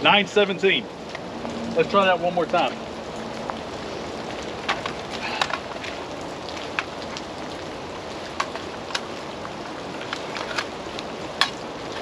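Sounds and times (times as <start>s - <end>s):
rain pouring: 0.0s - 12.0s
raindrops tapping surfaces: 0.0s - 12.0s.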